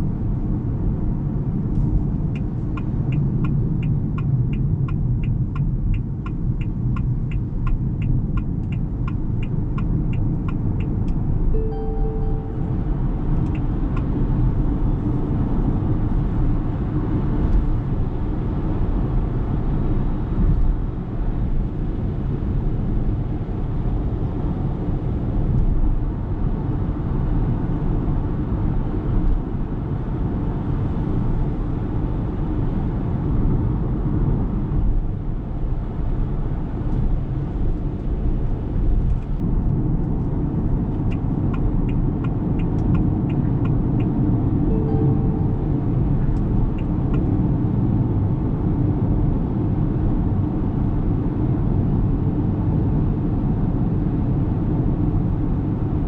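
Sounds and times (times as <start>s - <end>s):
car tyre and road rumble: 0.0s - 11.5s, 13.1s - 44.6s.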